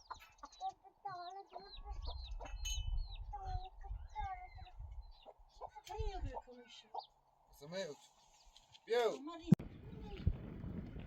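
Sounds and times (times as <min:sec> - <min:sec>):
chickens clucking: 0:00.0 - 0:07.2.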